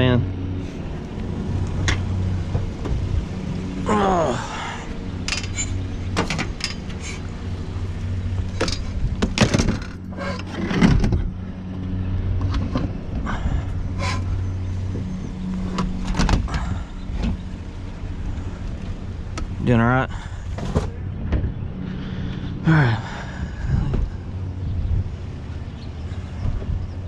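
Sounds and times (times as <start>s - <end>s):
vehicle engine idling: 0.0s - 27.0s
knocks and clanks of handling: 5.2s - 7.0s, 8.5s - 13.3s.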